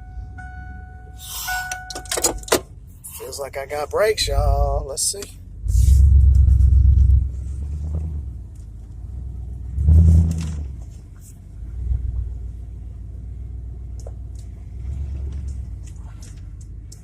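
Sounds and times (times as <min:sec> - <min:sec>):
pickup engine rumble: 0:00.0 - 0:17.0
road noise: 0:00.0 - 0:17.0.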